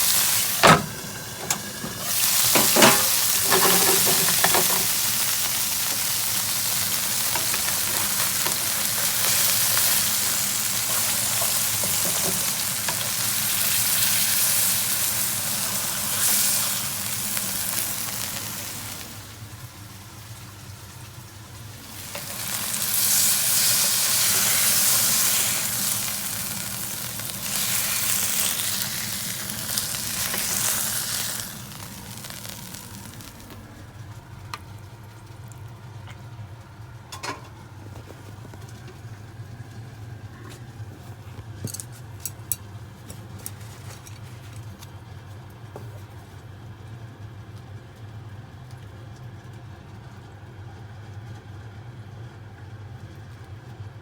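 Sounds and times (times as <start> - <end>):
food sizzling in a frying pan: 0.0 - 40.2.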